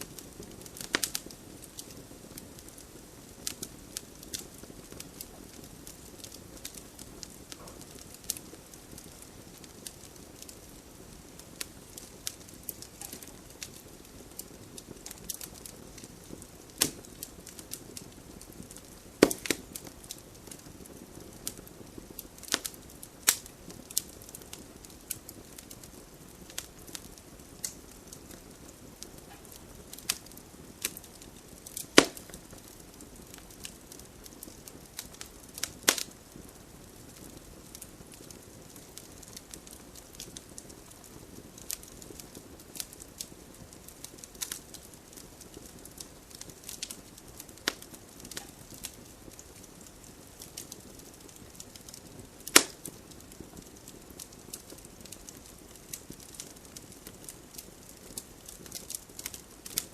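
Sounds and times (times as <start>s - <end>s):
campfire crackling and popping: 0.0s - 59.9s
low steady hiss: 0.0s - 59.9s.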